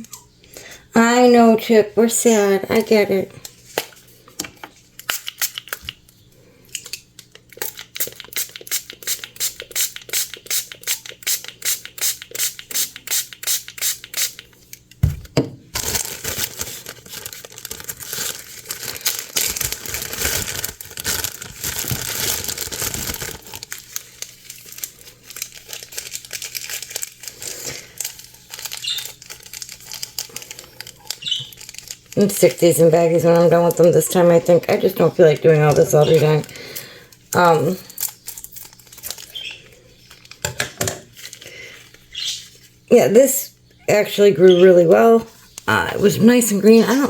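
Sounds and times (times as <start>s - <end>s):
plastic crinkling and rustling: 15.7s - 42.8s.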